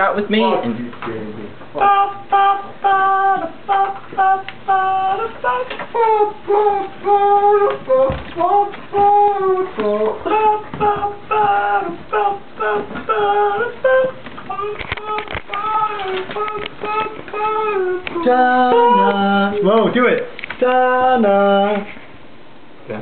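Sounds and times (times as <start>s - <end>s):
high-pitched voice wordless notes: 1.7s - 19.6s.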